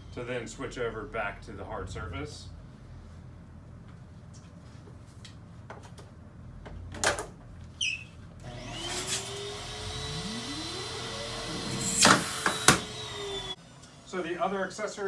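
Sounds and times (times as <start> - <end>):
vacuum air rush and whine: 8.5 - 15.0.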